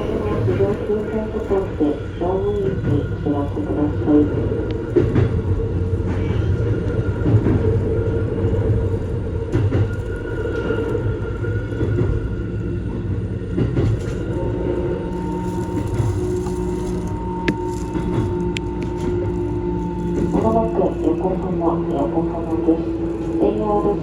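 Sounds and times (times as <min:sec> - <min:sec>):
steady tone: 0:00.0 - 0:01.8
electric train rumble: 0:00.0 - 0:24.0.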